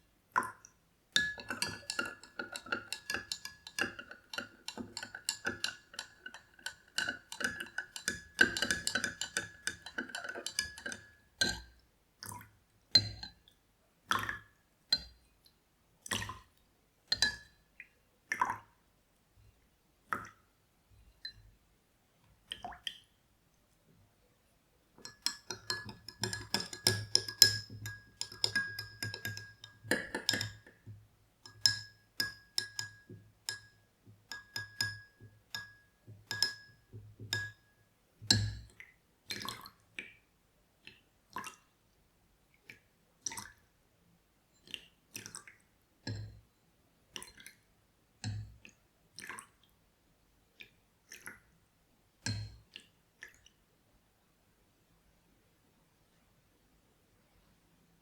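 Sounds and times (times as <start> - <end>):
small glassy clinks: 1.2 - 11.6, 25.0 - 30.7, 31.4 - 37.6.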